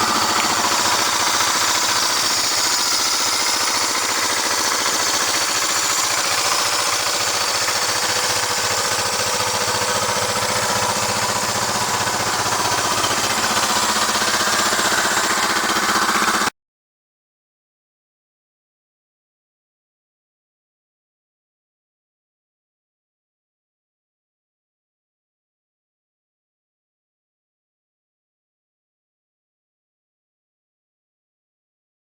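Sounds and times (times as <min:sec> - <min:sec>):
motorcycle engine idling: 0:00.0 - 0:16.5.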